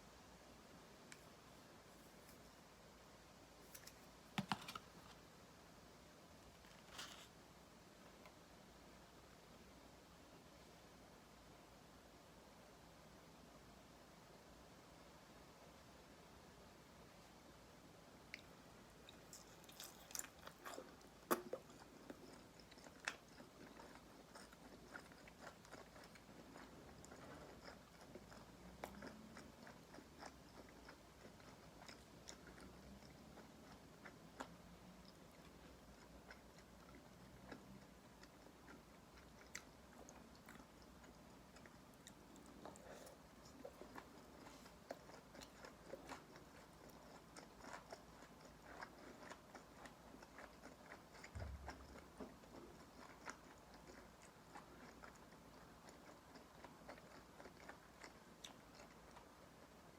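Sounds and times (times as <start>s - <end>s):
crunchy chewing: 6.6s - 7.3s, 18.3s - 59.7s.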